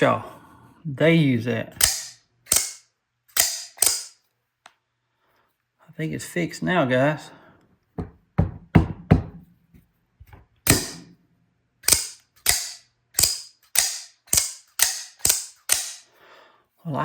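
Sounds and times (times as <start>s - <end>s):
automatic knife blade snapping: 1.8s - 4.2s, 10.7s - 11.1s, 11.8s - 16.1s.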